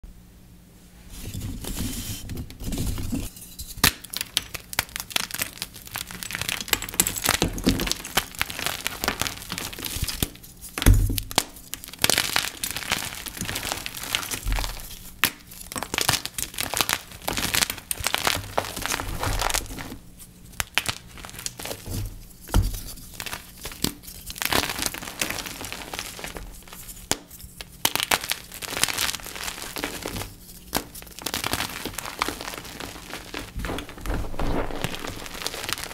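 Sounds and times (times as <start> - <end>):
dull thumps: 33.4 - 35.8.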